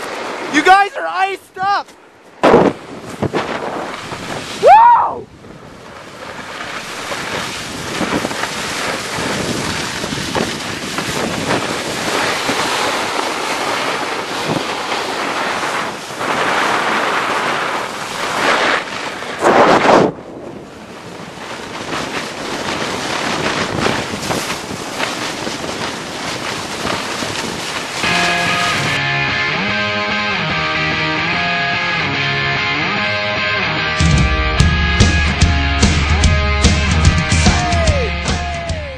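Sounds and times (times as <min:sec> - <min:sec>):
wind rushing over microphone: 0:01.6 - 0:29.0.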